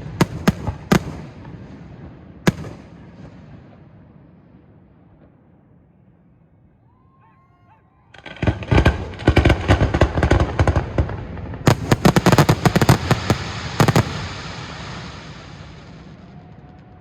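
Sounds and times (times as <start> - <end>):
fireworks bangs and crackles: 0.0 - 6.1, 8.1 - 17.0
fireworks rumble: 0.0 - 6.7, 8.1 - 17.0.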